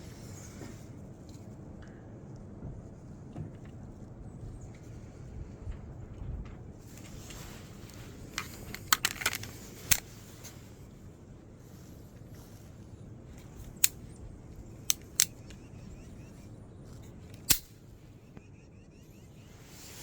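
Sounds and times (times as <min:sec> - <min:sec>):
pistol clicking: 0:08.3 - 0:10.1, 0:13.6 - 0:14.1, 0:14.8 - 0:15.7, 0:17.3 - 0:17.8.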